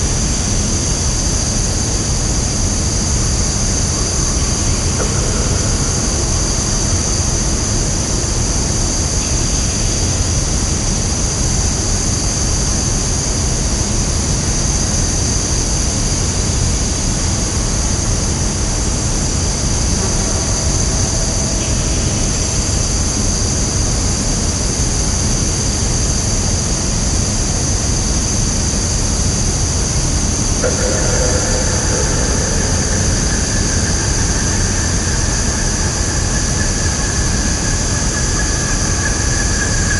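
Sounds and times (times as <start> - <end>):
constant low rumble: 0.0 - 39.9
high-pitched insect chorus: 2.4 - 10.2, 18.6 - 26.9, 28.5 - 39.9.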